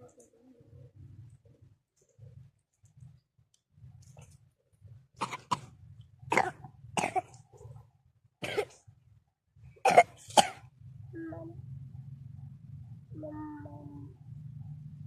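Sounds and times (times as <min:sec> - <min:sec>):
harsh coughs: 0:06.3 - 0:07.4, 0:08.4 - 0:08.8, 0:09.8 - 0:10.6.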